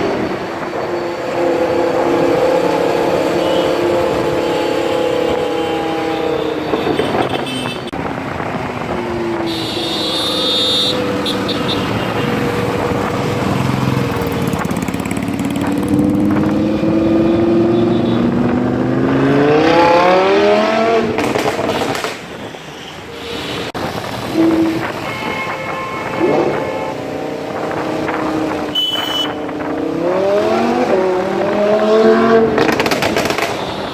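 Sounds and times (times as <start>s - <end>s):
sports car engine accelerating: 12.5s - 21.6s, 29.5s - 33.4s.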